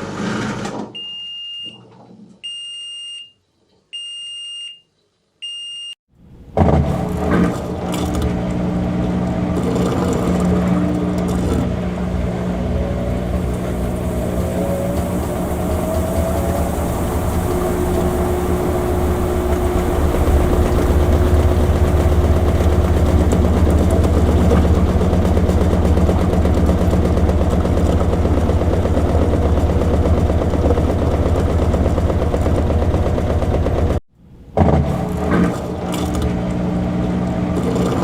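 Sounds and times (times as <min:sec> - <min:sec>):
washing machine running: 0:06.3 - 0:34.0, 0:34.6 - 0:38.0.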